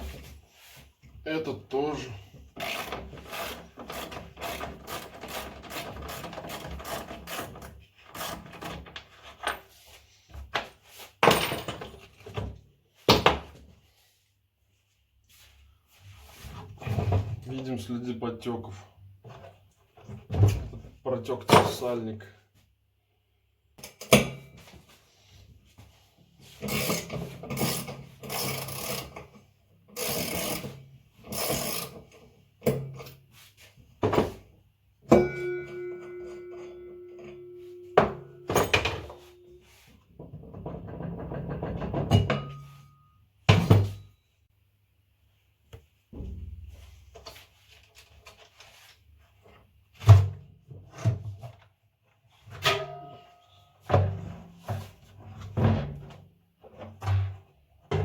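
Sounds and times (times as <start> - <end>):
steady held tone: 35.1 - 39.9.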